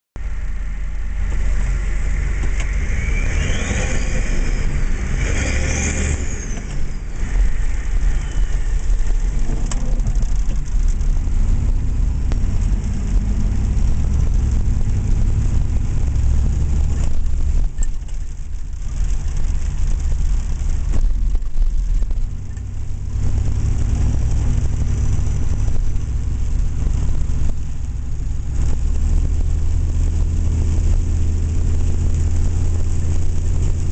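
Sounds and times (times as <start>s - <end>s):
diesel engine droning: 0.2s - 33.9s
turbocharger whistle: 1.7s - 9.3s.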